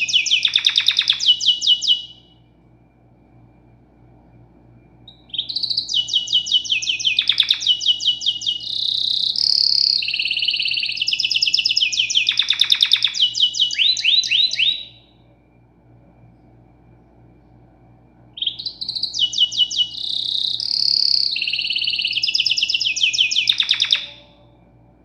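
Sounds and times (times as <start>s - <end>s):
songbird singing trills: 0.0s - 2.4s, 5.1s - 15.4s, 18.4s - 24.6s.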